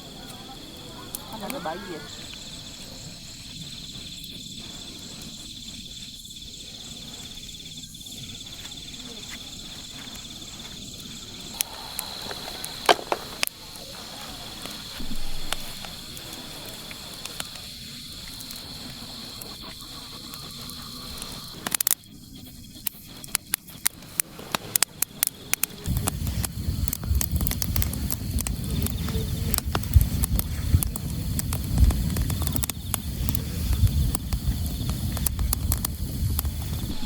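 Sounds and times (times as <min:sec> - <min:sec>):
wind rumbling on microphone: 0:00.0 - 0:21.7, 0:23.9 - 0:37.0
crickets chirping: 0:00.0 - 0:37.0
rain pattering: 0:11.1 - 0:37.0.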